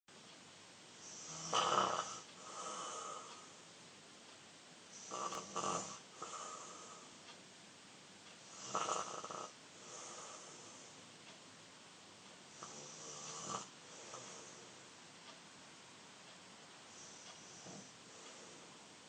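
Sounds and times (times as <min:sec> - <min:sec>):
soft breathing: 0:01.0 - 0:03.8, 0:04.9 - 0:07.4, 0:08.8 - 0:11.4, 0:12.5 - 0:15.4, 0:16.8 - 0:19.0
boy snoring: 0:01.1 - 0:03.4, 0:05.0 - 0:07.1, 0:08.5 - 0:10.7, 0:12.6 - 0:14.6, 0:17.0 - 0:17.9.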